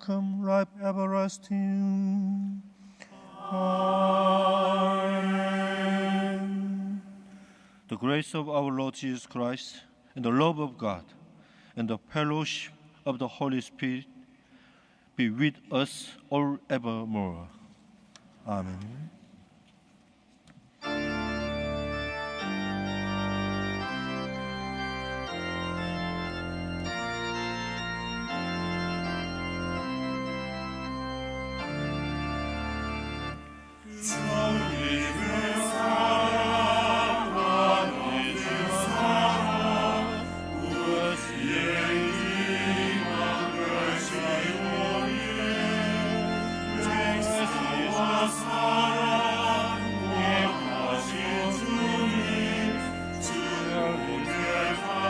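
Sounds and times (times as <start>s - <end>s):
choir singing: 3.0s - 7.3s, 33.8s - 55.0s
organ playing slow chords: 3.0s - 7.8s, 20.8s - 55.0s.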